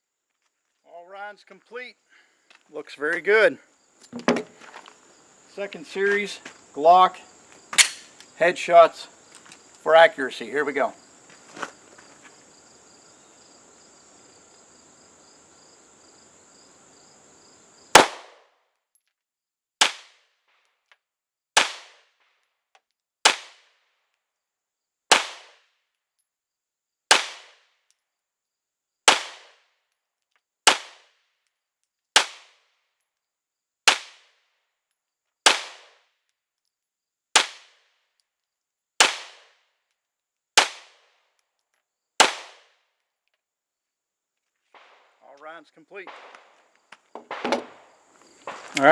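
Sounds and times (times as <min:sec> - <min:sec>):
high insect trill: 0:02.8 - 0:18.0, 0:44.7 - 0:48.9
pistol shots: 0:07.8 - 0:08.2, 0:17.9 - 0:18.4, 0:42.2 - 0:42.6, 0:46.0 - 0:46.6, 0:47.2 - 0:47.9.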